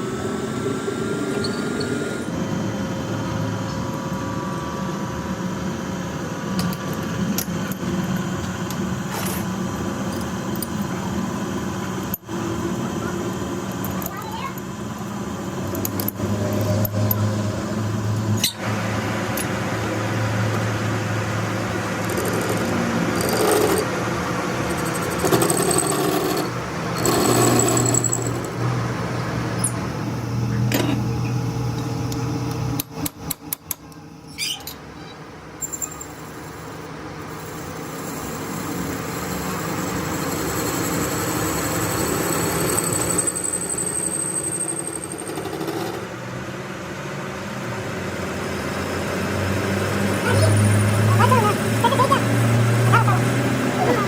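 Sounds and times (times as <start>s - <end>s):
machine hum: 0.0s - 33.2s.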